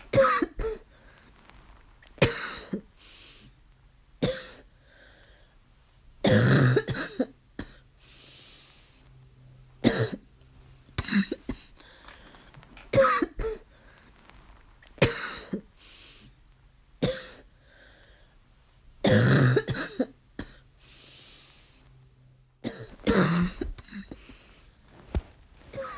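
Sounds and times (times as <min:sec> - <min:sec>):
harsh barking cough: 0:00.1 - 0:00.8, 0:02.2 - 0:02.9, 0:06.3 - 0:07.8, 0:09.8 - 0:10.2, 0:11.0 - 0:11.7, 0:12.9 - 0:13.6, 0:15.0 - 0:15.6, 0:19.1 - 0:20.6.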